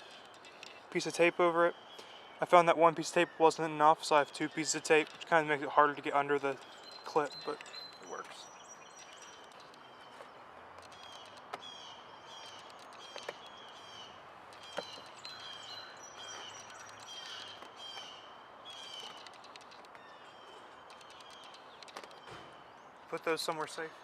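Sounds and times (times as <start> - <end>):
songbirds chirping: 0.0 - 24.0
sharp clicks: 9.0 - 9.9, 10.7 - 11.7, 12.4 - 13.5, 16.4 - 18.1, 18.7 - 20.0, 20.8 - 22.4.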